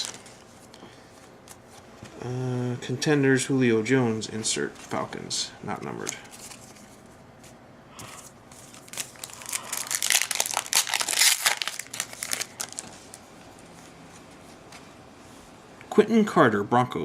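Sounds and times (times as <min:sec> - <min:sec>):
wrapper crinkling and tearing: 0:08.6 - 0:13.2.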